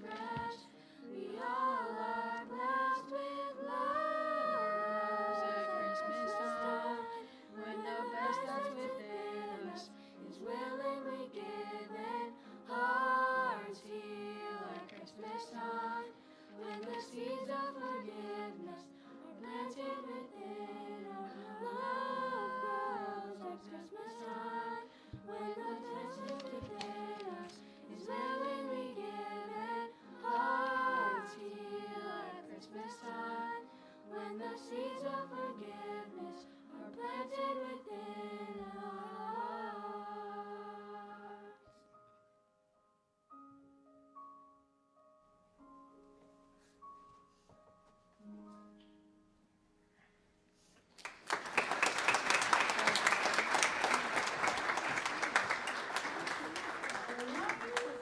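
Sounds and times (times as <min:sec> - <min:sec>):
choir singing: 0:00.0 - 0:41.7, 0:51.6 - 0:58.0.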